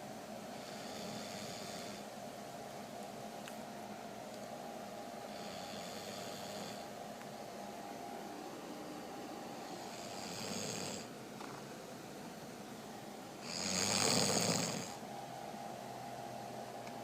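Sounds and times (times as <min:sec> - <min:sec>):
loud rattling snore: 0:09.8 - 0:11.1, 0:13.4 - 0:15.0.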